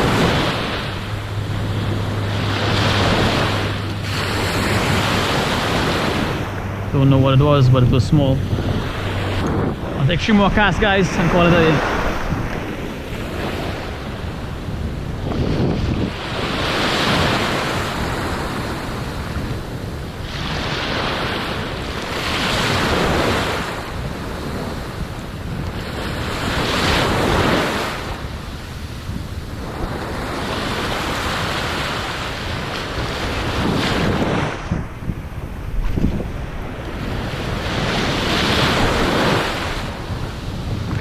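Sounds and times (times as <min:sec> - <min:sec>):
ocean surf breaking: 0:00.0 - 0:41.0
wind buffeting microphone: 0:00.0 - 0:41.0.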